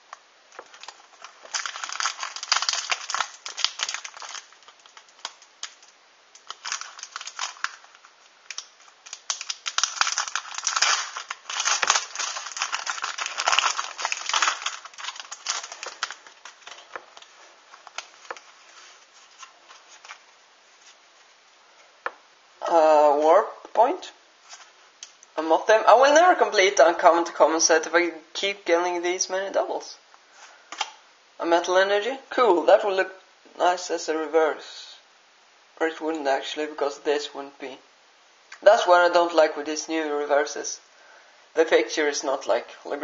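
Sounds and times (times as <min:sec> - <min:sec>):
foil wrapper crinkling and tearing: 0:00.5 - 0:20.3.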